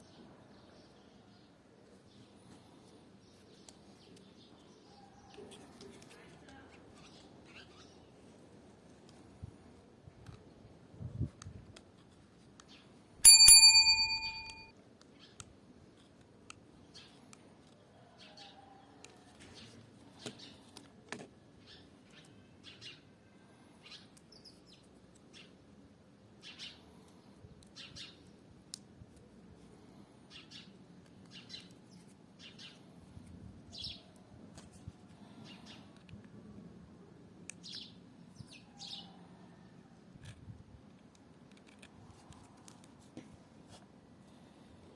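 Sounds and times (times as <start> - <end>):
loud metallic ring: 13.3 - 14.7.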